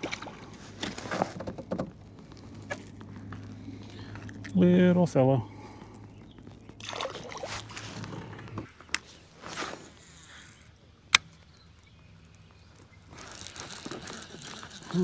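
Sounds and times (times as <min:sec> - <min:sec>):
rustling and swishing: 0:07.2 - 0:10.7.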